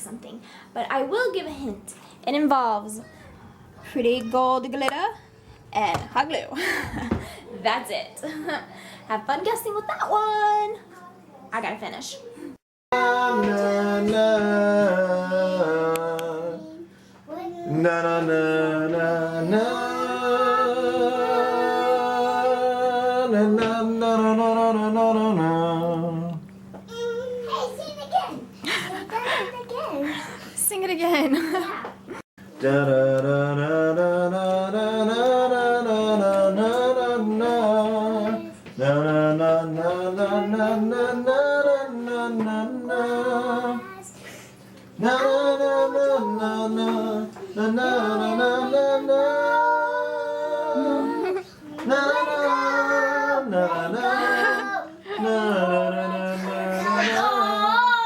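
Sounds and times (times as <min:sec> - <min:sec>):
person humming a wordless tune: 0:17.7 - 0:26.5, 0:45.0 - 0:58.0.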